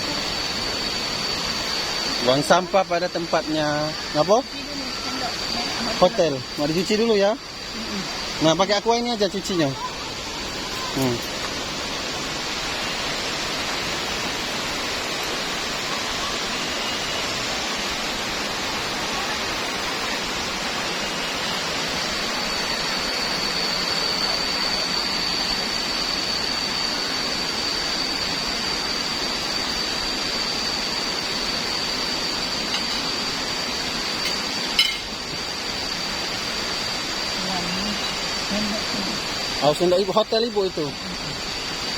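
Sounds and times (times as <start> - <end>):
waterfall rushing: 0.0 - 27.2, 27.8 - 41.9
high-pitched whine: 0.0 - 41.9.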